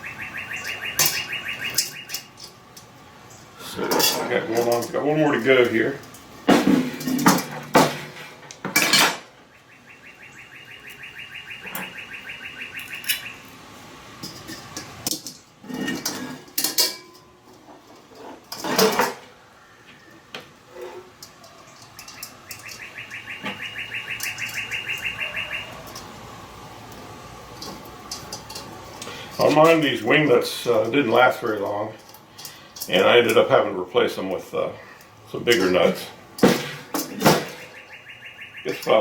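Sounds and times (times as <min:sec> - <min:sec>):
bird trilling: 0:00.0 - 0:02.4, 0:09.4 - 0:13.6, 0:22.0 - 0:26.0, 0:37.5 - 0:39.0
metal grill parts clinking: 0:00.5 - 0:09.4, 0:14.2 - 0:19.4, 0:20.0 - 0:37.9, 0:38.6 - 0:39.0.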